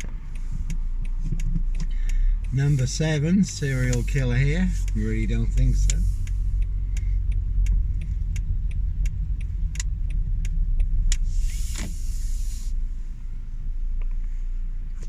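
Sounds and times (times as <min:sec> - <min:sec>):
small sharp clicks: 0:00.0 - 0:12.8
car interior rumble: 0:00.0 - 0:15.0
burst of hiss: 0:11.2 - 0:13.0.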